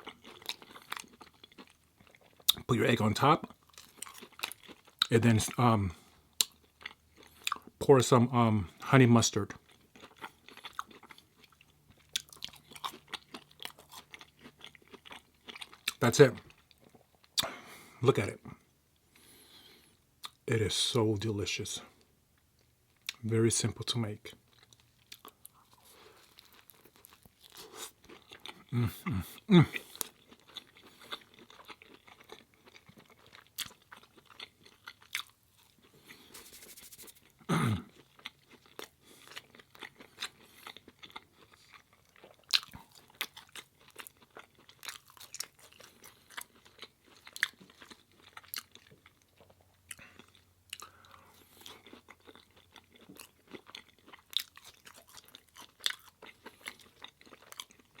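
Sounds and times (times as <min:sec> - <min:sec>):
chewing and crunching food: 0:00.0 - 0:20.5, 0:21.8 - 0:23.4, 0:24.1 - 0:58.0.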